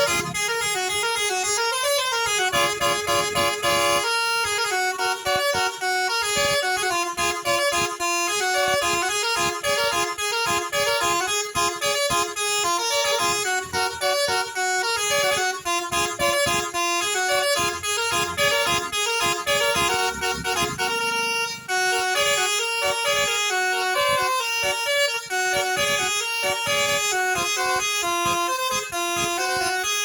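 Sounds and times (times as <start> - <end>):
musical air horn melody: 0.0 - 30.0.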